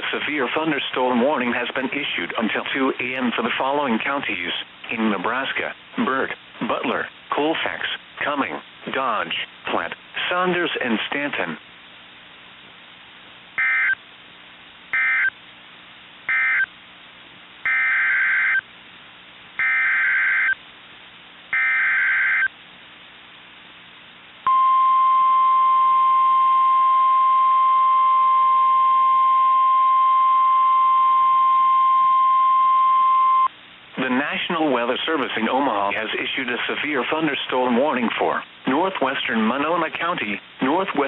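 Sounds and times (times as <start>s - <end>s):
steady warning alarm tone: 13.6s - 14.0s, 15.0s - 15.3s, 16.3s - 16.7s, 17.7s - 18.6s, 19.6s - 20.6s, 21.6s - 22.5s.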